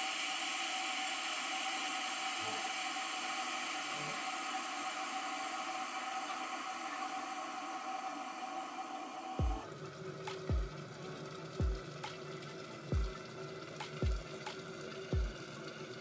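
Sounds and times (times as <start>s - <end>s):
electric kettle heating water: 0.0s - 10.6s.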